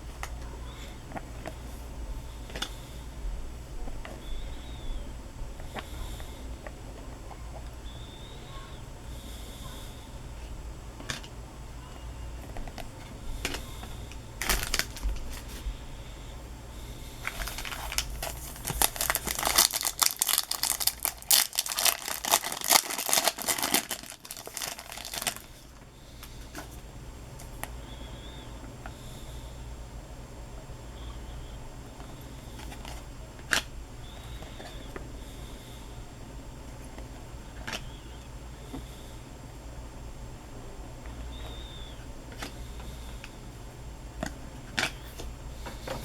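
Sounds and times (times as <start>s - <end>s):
wrapper clicks: 14.4s - 15.5s, 17.2s - 25.8s
wrapper crinkling and tearing: 14.4s - 15.5s, 17.2s - 25.8s.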